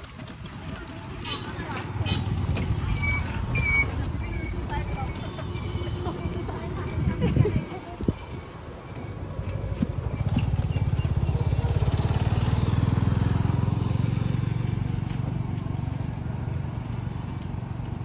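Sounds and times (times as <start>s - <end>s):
vehicle engine passing by: 9.3s - 18.0s.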